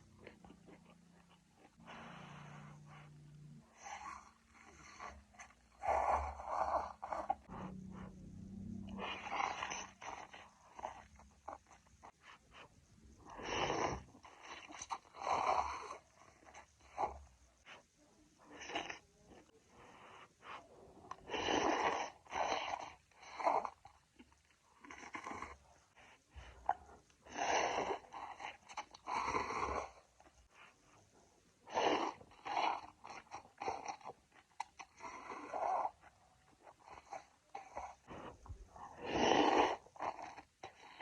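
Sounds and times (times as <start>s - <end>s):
person slurping noodles: 21.2s - 23.8s, 38.9s - 41.0s.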